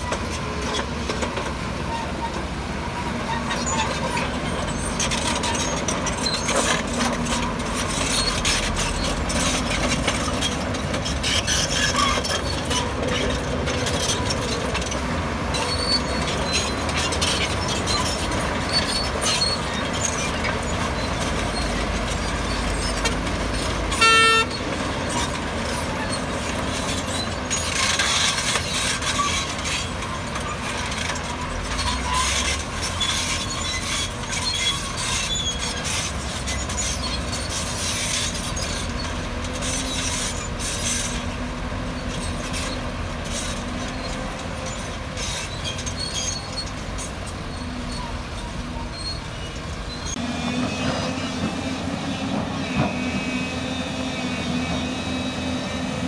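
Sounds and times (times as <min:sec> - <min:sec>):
heavy machinery running under load: 0:00.0 - 0:56.0
short horn toot: 0:23.9 - 0:24.6.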